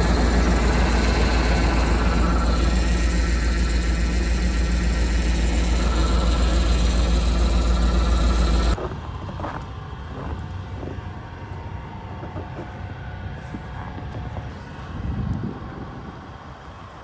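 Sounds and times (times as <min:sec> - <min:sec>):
heavy engine droning: 0:00.0 - 0:08.8.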